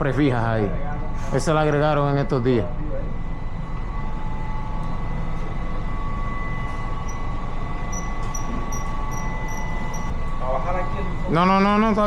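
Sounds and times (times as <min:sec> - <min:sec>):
high whine: 0:00.0 - 0:12.0
machinery rumble: 0:00.0 - 0:12.0
short high-pitched beeps: 0:07.9 - 0:10.1.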